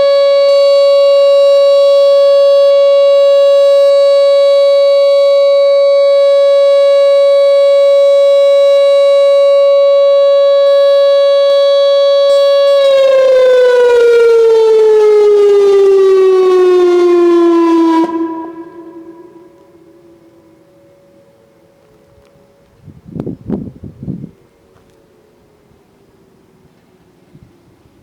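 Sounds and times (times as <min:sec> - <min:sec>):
electronic warning siren steady tone: 0:00.0 - 0:21.6.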